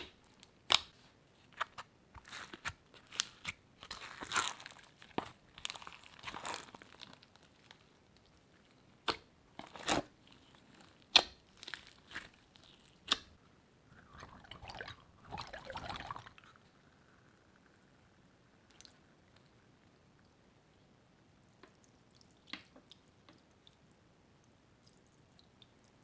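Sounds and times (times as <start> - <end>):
slime squishing: 0.0 - 13.4.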